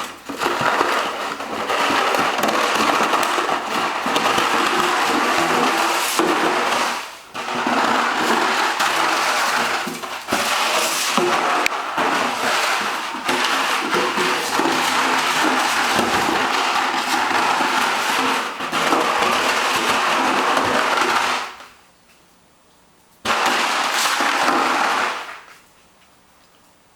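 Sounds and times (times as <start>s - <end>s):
milk carton crackling: 0.0s - 21.8s, 23.3s - 25.6s.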